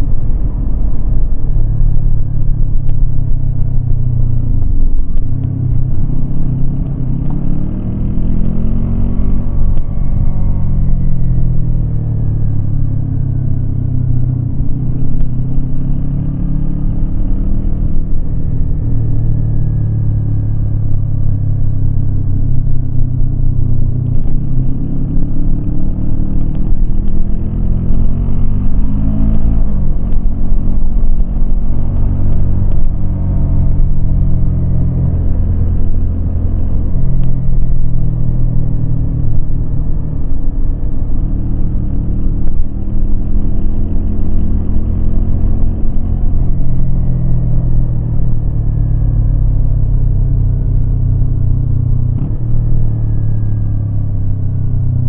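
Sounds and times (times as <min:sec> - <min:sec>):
motorcycle engine revving: 0:04.1 - 0:12.0, 0:22.8 - 0:54.4.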